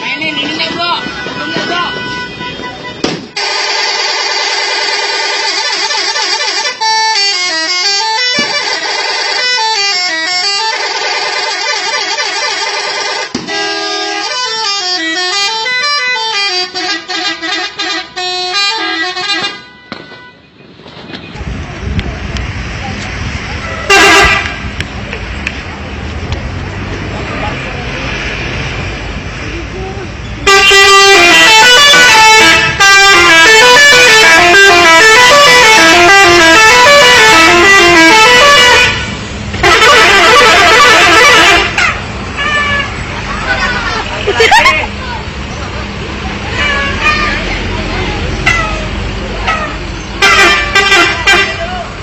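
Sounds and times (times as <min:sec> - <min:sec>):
musical bus horn playing a tune: 0:00.6 - 0:20.4, 0:23.6 - 0:24.6, 0:30.4 - 0:43.0, 0:46.5 - 0:51.8.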